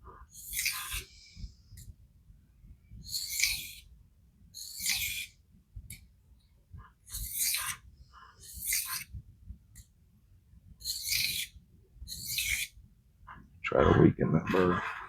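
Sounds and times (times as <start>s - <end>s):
blade scraping on sharpening stone: 0.4s - 1.0s, 4.6s - 5.3s, 8.6s - 9.1s.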